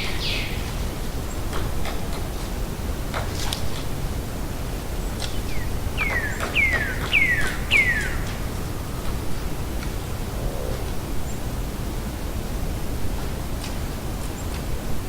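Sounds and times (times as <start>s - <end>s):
woodpecker calls: 0.0s - 2.3s, 5.2s - 8.9s
outdoor background hiss: 0.0s - 15.0s
woodpecker tapping: 5.2s - 8.6s.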